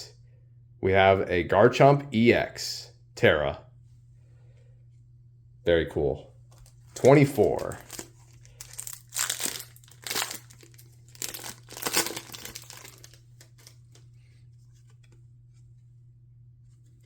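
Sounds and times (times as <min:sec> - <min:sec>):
foil wrapper crinkling and tearing: 0:07.0 - 0:13.8.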